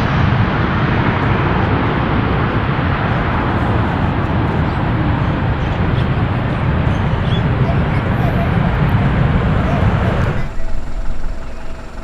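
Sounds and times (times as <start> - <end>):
jet engines roaring: 0.0 - 12.0.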